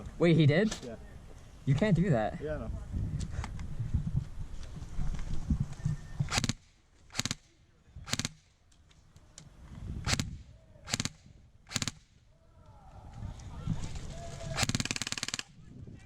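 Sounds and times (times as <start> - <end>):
airsoft gun bursts: 6.3 - 7.5, 8.1 - 8.4, 10.1 - 12.0, 14.6 - 15.5.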